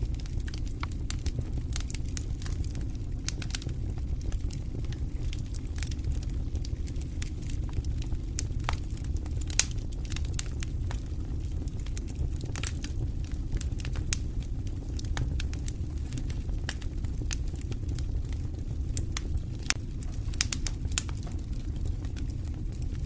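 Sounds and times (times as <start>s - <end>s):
fire crackling and popping: 0.0s - 23.0s
fire rumbling: 0.0s - 23.0s.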